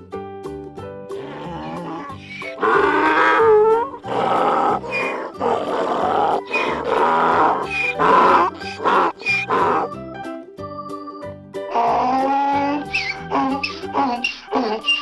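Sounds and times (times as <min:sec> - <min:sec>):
children's background music: 0:00.0 - 0:15.0
rough farm animal call: 0:01.2 - 0:09.9.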